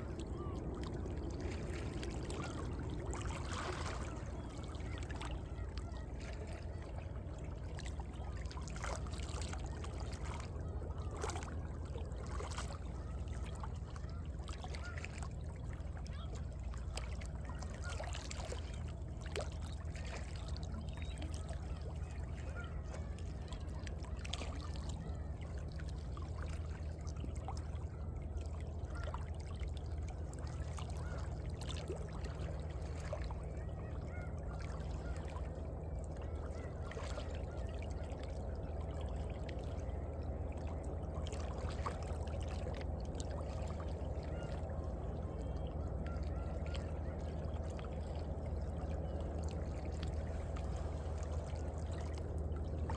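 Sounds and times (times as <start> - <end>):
waves lapping between rocks: 0.0 - 15.3
small water splashes: 0.0 - 52.9
water gurgling and trickling: 0.0 - 52.9.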